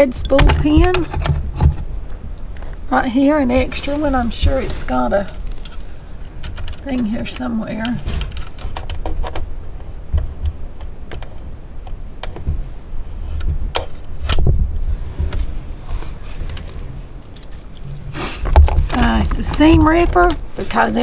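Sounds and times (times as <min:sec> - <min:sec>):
plastic parts rummaged clicking: 0:03.5 - 0:11.4, 0:13.3 - 0:21.0.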